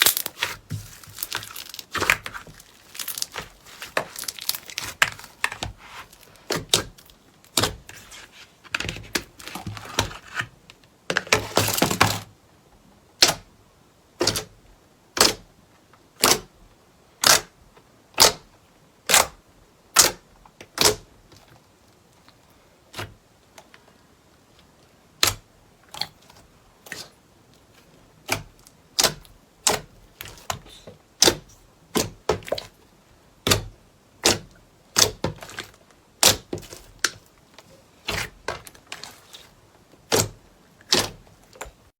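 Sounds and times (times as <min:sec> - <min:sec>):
slime popping: 0:00.0 - 0:07.7
slime crackling: 0:00.0 - 0:08.2.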